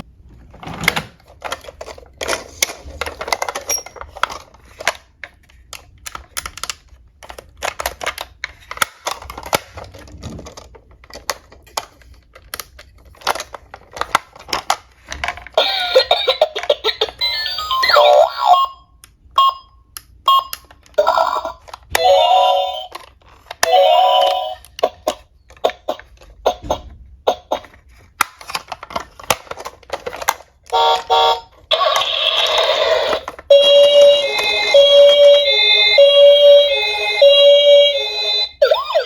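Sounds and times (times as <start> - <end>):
toy siren: 15.6 - 18.8, 21.0 - 23.0, 30.7 - 39.0.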